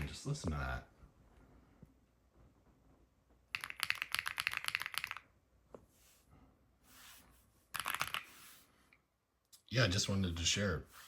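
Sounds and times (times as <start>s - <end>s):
mechanical keyboard typing: 3.5s - 5.2s, 7.8s - 8.3s.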